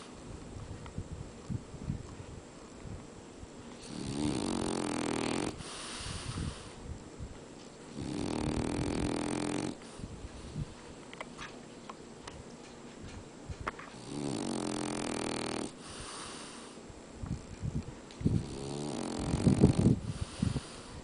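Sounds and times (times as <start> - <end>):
dog snoring: 3.8 - 6.8, 7.9 - 10.0, 14.0 - 16.8, 18.3 - 21.0
dog breathing: 3.8 - 6.9, 13.9 - 16.8, 18.2 - 21.0.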